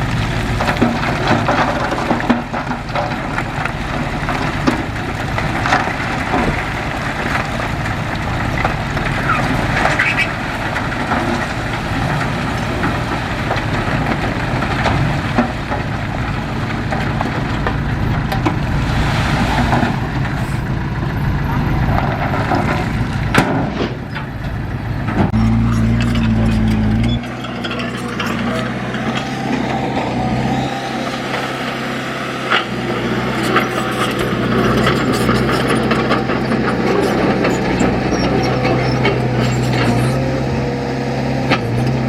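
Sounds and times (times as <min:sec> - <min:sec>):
diesel engine running: 0:00.0 - 0:42.0
metal knocks and clanks: 0:19.6 - 0:30.1.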